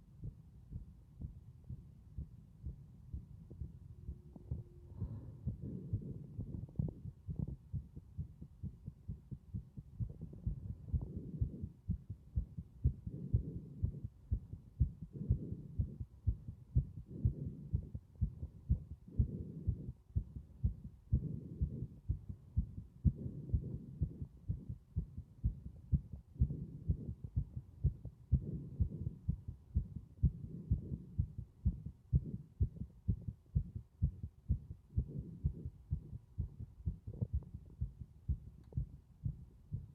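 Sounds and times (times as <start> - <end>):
heartbeat: 0.0 - 39.9
breathing: 4.9 - 6.3.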